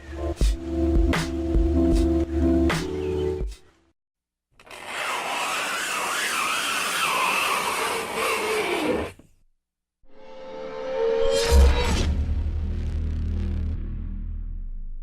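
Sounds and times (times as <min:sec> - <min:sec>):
fingernails scraping blackboard: 0:04.6 - 0:09.3.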